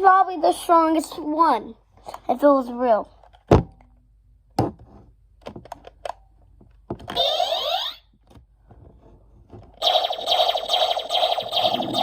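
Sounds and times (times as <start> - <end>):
sweeping electronic tones: 9.8 - 12.0.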